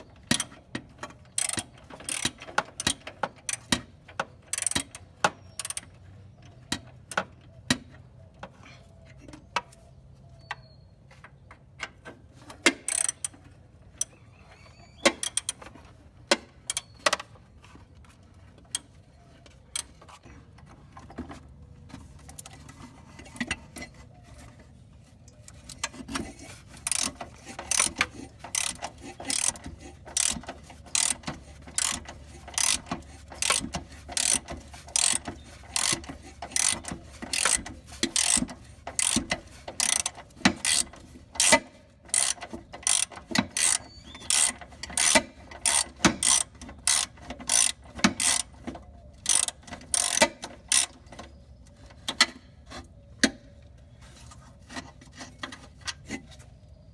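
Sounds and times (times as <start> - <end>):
hand ratchet clicking: 1.4 - 3.7, 4.5 - 5.0, 12.8 - 13.4, 25.7 - 48.5, 49.2 - 51.0.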